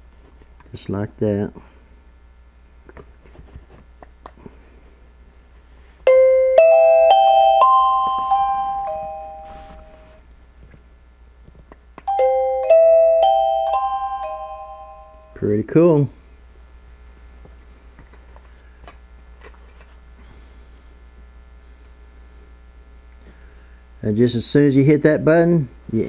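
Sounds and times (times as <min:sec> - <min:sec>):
doorbell chime tune: 0:06.1 - 0:10.2, 0:12.1 - 0:15.4.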